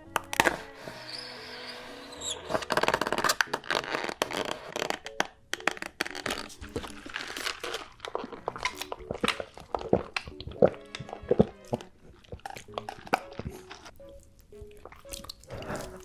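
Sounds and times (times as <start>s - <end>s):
crunchy food chewing: 6.0s - 16.0s.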